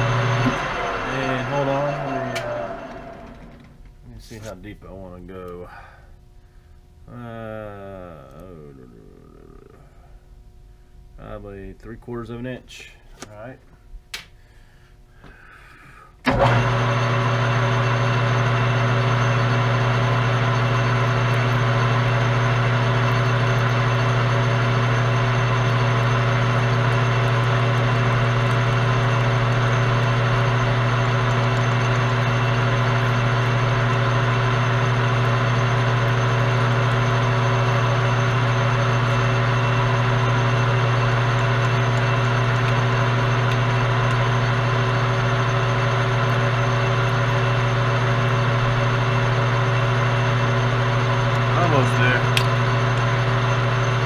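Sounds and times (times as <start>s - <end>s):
metal lathe humming: 0.0s - 4.4s, 16.3s - 54.0s.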